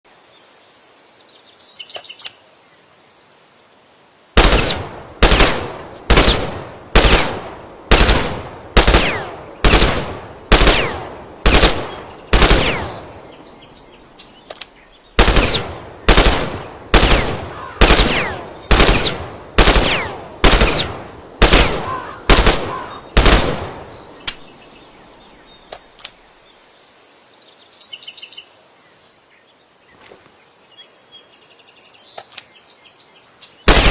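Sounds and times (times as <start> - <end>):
rifle shots with echo: 4.4 - 13.4, 15.2 - 24.3, 33.7 - 33.9.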